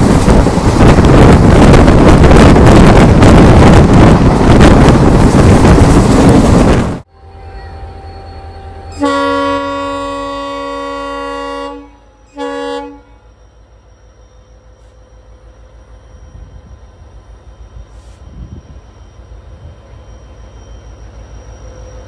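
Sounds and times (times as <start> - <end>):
wind rushing on microphone: 0.0 - 7.1, 18.2 - 18.9
locomotive horn blasts: 7.1 - 13.4.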